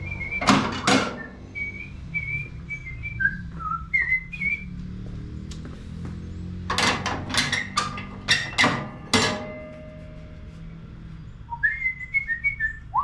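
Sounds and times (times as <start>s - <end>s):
hard objects clanking: 0.4s - 1.3s, 6.6s - 10.6s
person whistling gliding notes: 1.2s - 4.8s, 11.5s - 13.0s.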